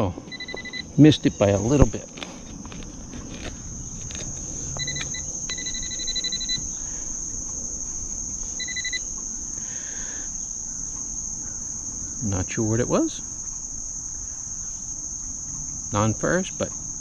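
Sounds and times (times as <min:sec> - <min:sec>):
crickets chirping: 0:00.0 - 0:17.0
metal detector beeping: 0:00.3 - 0:02.4, 0:03.4 - 0:06.8, 0:08.4 - 0:09.1.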